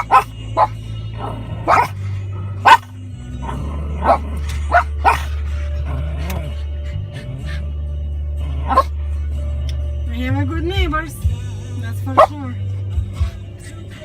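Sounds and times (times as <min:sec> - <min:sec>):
dog barking: 0:00.0 - 0:00.8, 0:01.6 - 0:02.0, 0:02.6 - 0:03.0, 0:04.0 - 0:05.4, 0:08.7 - 0:08.9, 0:12.2 - 0:12.4.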